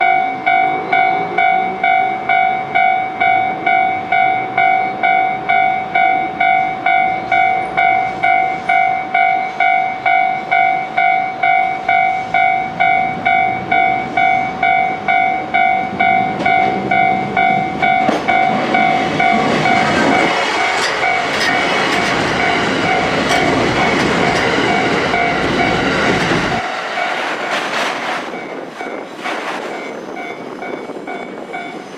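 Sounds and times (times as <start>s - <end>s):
level crossing warning bell ringing: 0.0s - 27.6s, 28.3s - 29.1s, 29.8s - 31.9s
electric train passing: 0.0s - 31.9s
train wheels clacking over rail joints: 13.2s - 31.9s.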